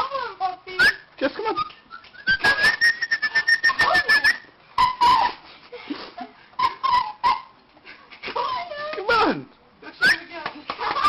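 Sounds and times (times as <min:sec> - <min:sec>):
person whistling: 0:01.6 - 0:05.2.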